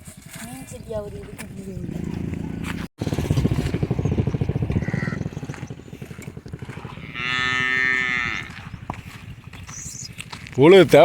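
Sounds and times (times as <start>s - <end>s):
cow mooing: 4.7s - 5.2s, 6.6s - 8.7s.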